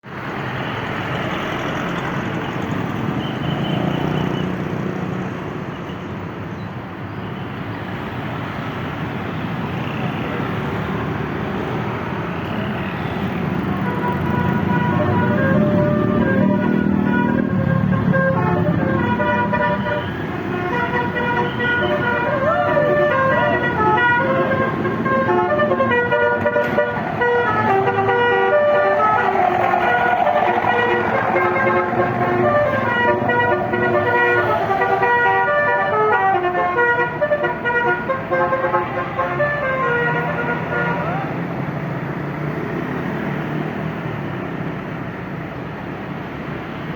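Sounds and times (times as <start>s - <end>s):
road traffic noise: 0.0s - 46.9s
melodic multi-tone horn: 13.8s - 41.3s.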